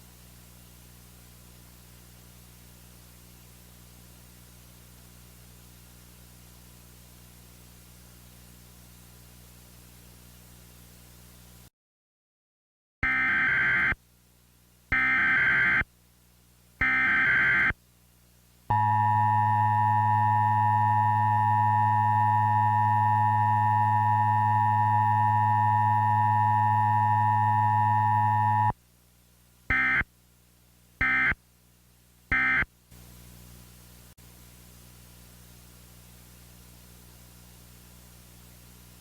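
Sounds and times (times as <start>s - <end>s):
faint static: 0.0s - 11.7s, 13.0s - 39.0s
two-tone attention signal: 18.7s - 28.7s.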